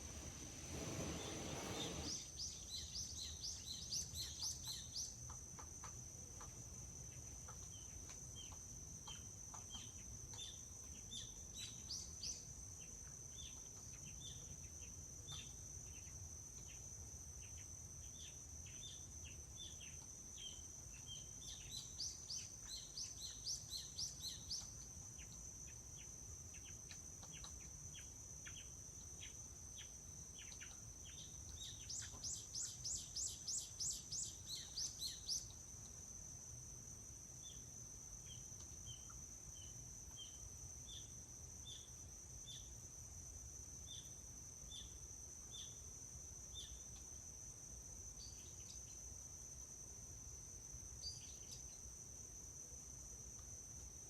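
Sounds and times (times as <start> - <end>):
brief rushing noise: 0.0 - 2.4
small birds chirping: 0.0 - 12.4, 18.1 - 25.4, 26.0 - 35.6
insect drone: 0.0 - 54.0.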